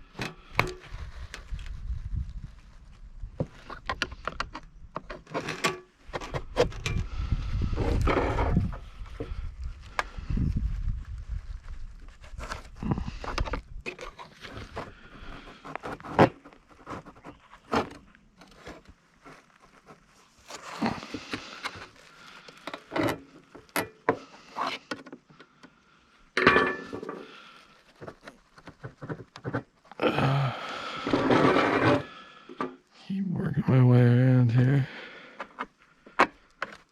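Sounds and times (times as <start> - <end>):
metal scraping: 31.0 - 32.1.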